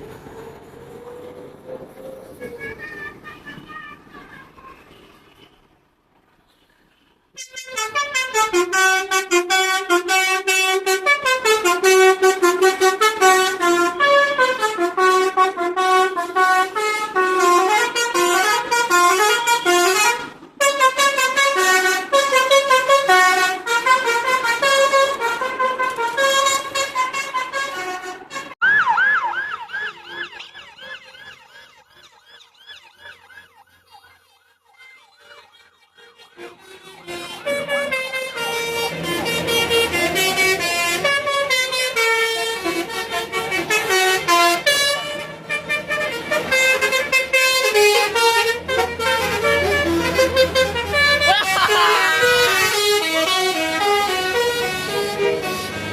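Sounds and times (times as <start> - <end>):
bus musical horn tune: 7.4 - 28.7, 34.8 - 55.9
siren-like warbling wail: 28.6 - 36.6.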